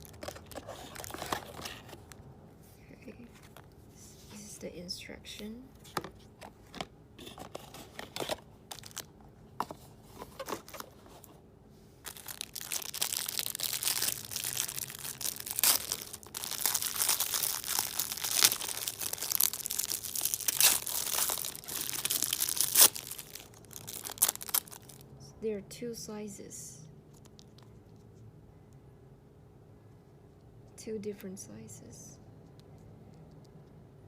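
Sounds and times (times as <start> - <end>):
packaging crinkling and rustling: 0.0 - 2.2, 5.9 - 11.4, 12.0 - 25.0.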